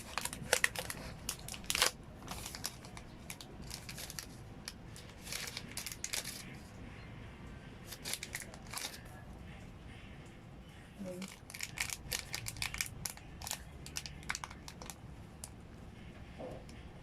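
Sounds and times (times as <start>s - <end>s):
plastic wrapping crinkling: 0.0s - 6.6s, 7.9s - 9.1s, 11.2s - 15.0s.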